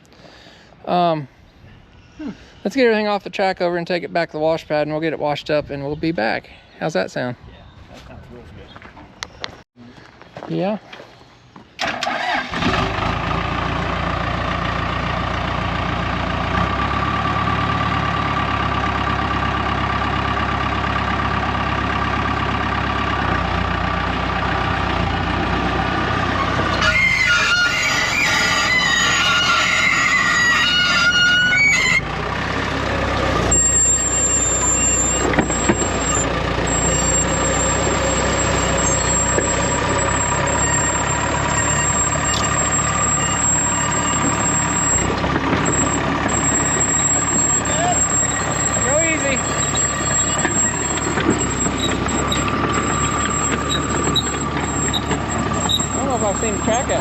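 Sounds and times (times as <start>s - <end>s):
dozer diesel engine running: 11.8s - 57.0s
wavering high squealing: 26.3s - 32.1s, 33.1s - 57.0s.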